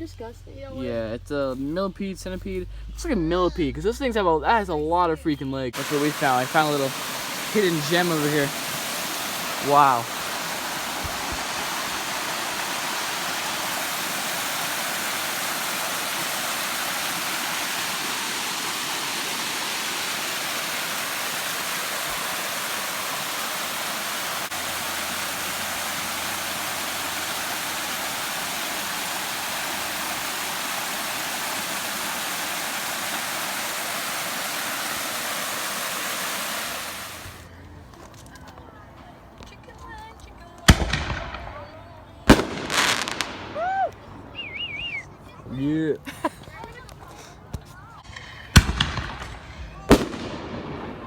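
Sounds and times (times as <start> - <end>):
creek water rushing: 5.8 - 37.6, 42.3 - 45.3.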